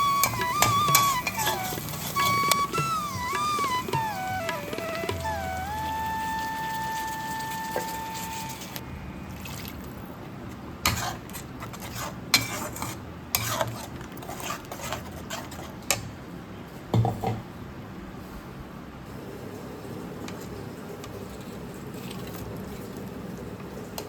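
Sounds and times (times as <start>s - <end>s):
held musical tone: 0.0s - 8.8s.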